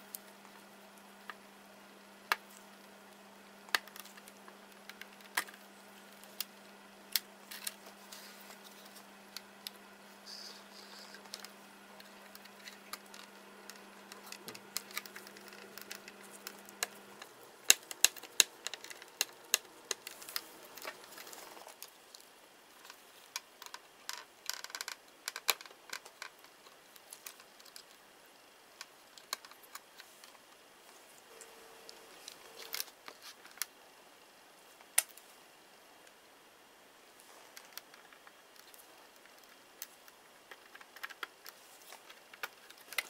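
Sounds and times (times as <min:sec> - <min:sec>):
low steady hum: 0:00.0 - 0:43.0
laptop parts clicking and tapping: 0:12.3 - 0:21.4.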